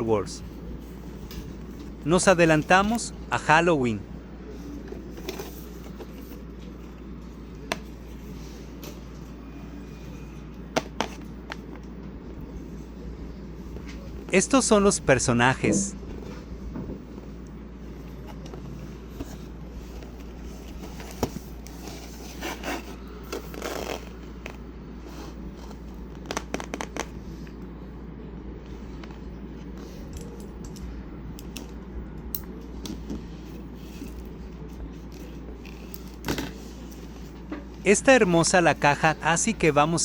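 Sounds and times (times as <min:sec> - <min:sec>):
steady low hum: 0:00.0 - 0:21.7.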